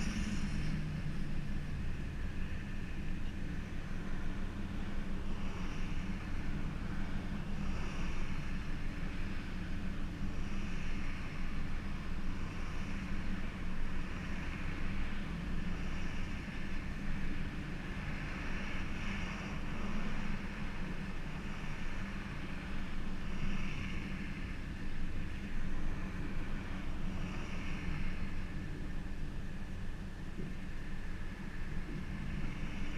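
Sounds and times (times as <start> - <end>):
car engine running: 0.0 - 5.6.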